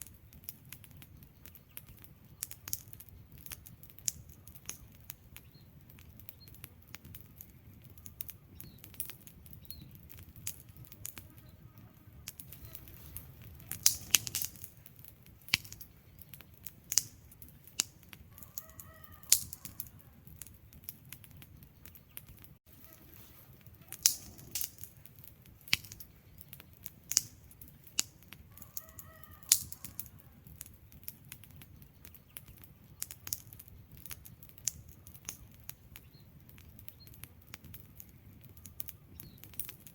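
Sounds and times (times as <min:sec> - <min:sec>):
low rush of flames: 0:00.0 - 0:39.9
wood fire crackling and popping: 0:00.0 - 0:39.9.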